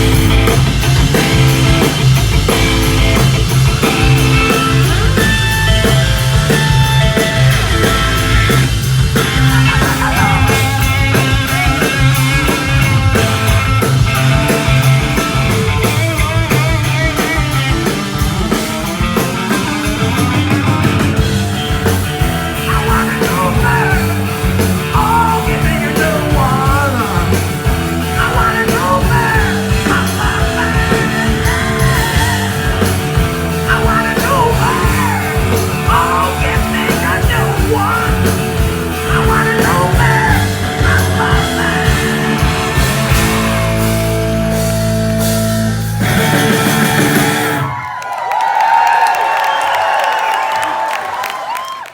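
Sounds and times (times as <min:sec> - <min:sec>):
rock band playing live: 0:00.0 - 0:48.0
person singing: 0:09.2 - 0:13.3, 0:22.5 - 0:33.0, 0:33.6 - 0:43.4.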